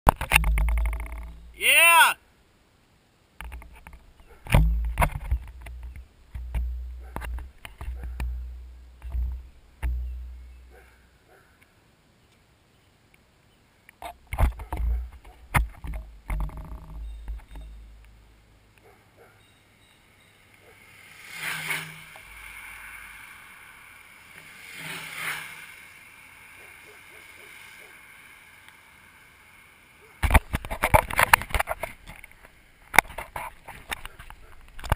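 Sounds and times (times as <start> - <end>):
longboard wheels rolling on road: 0.1 - 1.6, 3.3 - 11.4, 13.9 - 34.9
sharp knocks and clicks: 0.1 - 1.6, 3.4 - 10.8, 13.9 - 18.2, 30.2 - 34.9.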